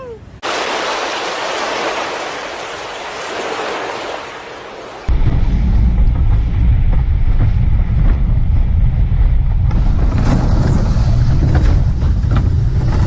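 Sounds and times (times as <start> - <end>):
wind rumble on microphone: 5.0 - 13.0.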